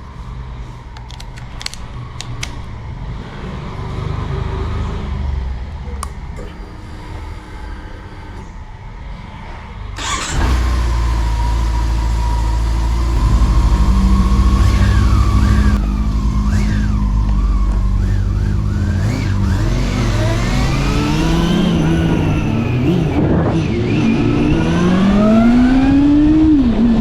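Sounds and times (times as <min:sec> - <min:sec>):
motorcycle engine revving: 0:10.0 - 0:27.0.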